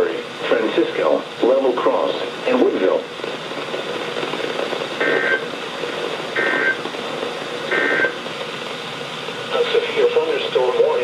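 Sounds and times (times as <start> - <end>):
radio hiss: 0.0 - 11.0
digital data tone bursts: 5.0 - 5.5, 6.4 - 6.8, 7.7 - 8.2.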